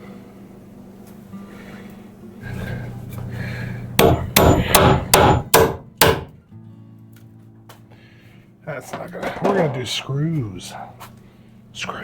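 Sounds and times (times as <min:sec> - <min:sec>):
hammer striking wood: 0:04.0 - 0:06.3.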